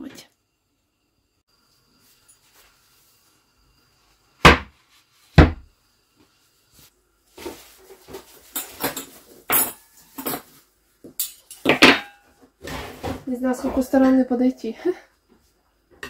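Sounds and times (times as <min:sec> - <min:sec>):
cutlery clinking and scraping dishes: 0:08.5 - 0:13.9
dishes knocking down: 0:11.2 - 0:12.2.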